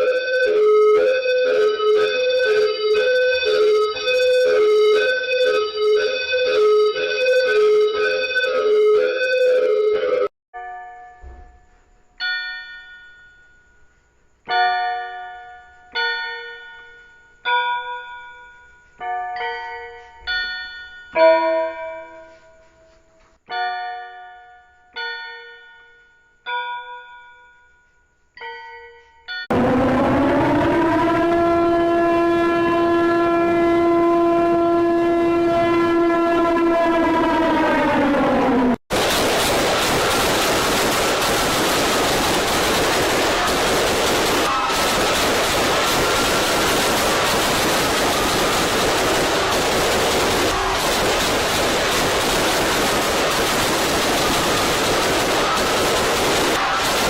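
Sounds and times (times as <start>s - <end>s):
loud horn-like alert tone: 29.5s - 37.2s.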